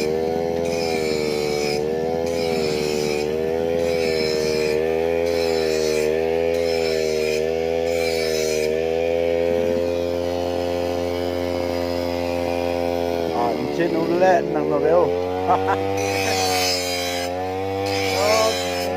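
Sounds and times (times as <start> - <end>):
brush cutter engine running: 0.0 - 18.9.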